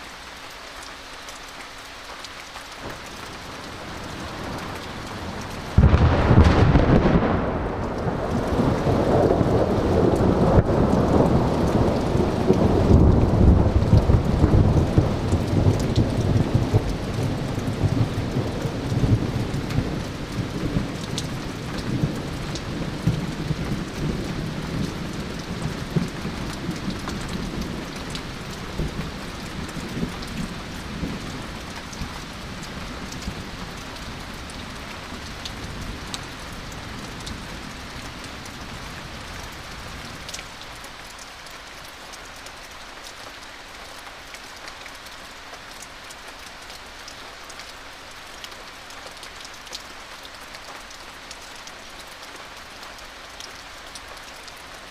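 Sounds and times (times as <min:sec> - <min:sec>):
raindrops ticking: 0:00.0 - 0:54.9
steady rain: 0:00.0 - 0:54.9
thunder rumbling: 0:03.9 - 0:37.8.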